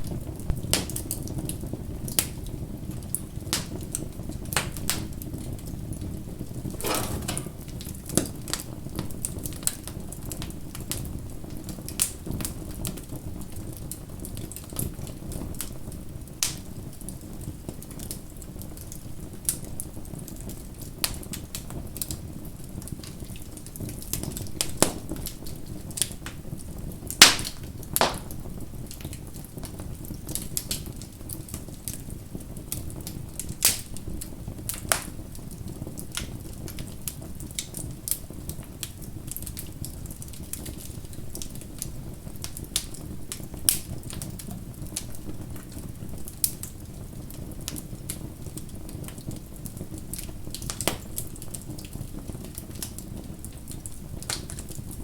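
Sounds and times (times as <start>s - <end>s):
bonfire crackling: 2.0s - 24.3s, 25.2s - 55.0s
sharp pops and snaps of fire: 6.8s - 8.3s, 27.1s - 55.0s.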